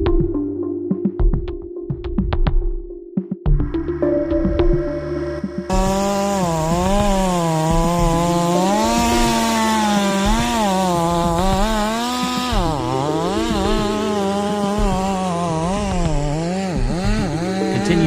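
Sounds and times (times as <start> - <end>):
chainsaw cutting wood: 5.6 - 18.0.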